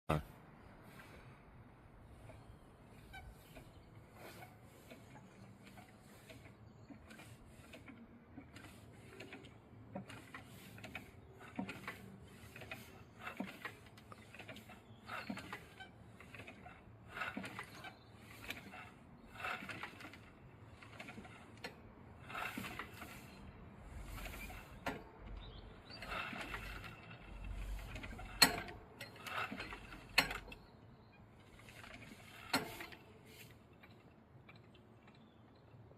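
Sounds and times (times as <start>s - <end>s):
bell rope clicks and creaks: 2.2s - 35.9s.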